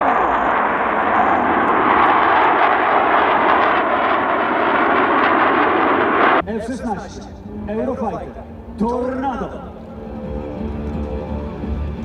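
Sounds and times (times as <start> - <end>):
jet engine noise: 0.0 - 7.5.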